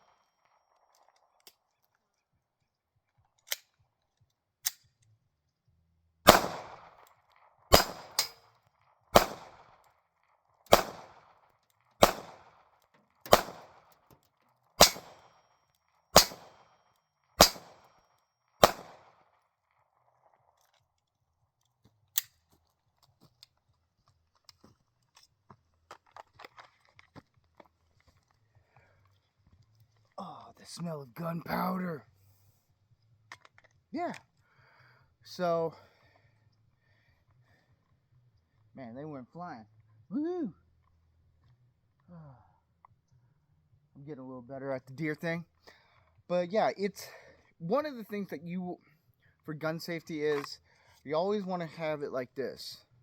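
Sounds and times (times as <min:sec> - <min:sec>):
faint gunshot cracks: 0:06.3 - 0:07.0, 0:07.7 - 0:08.4, 0:09.2 - 0:09.7, 0:10.7 - 0:11.2, 0:12.0 - 0:12.5, 0:13.3 - 0:13.8, 0:14.8 - 0:15.2, 0:16.2 - 0:16.6, 0:17.4 - 0:17.8, 0:18.6 - 0:19.1
pistol shots: 0:06.3 - 0:07.1, 0:07.7 - 0:08.4, 0:09.2 - 0:09.9, 0:10.7 - 0:11.4, 0:12.0 - 0:12.7, 0:13.3 - 0:13.9, 0:14.8 - 0:15.3, 0:16.2 - 0:16.7, 0:17.4 - 0:17.9, 0:18.6 - 0:19.3.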